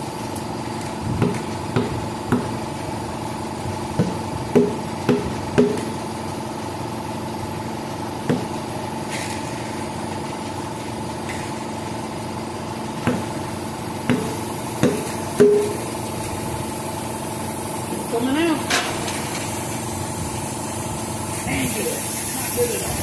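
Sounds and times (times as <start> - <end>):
machine hum: 0.0 - 23.0
hammer knocking on tire: 1.2 - 2.7, 3.9 - 6.1, 8.3 - 8.6, 13.0 - 13.4, 14.0 - 15.9.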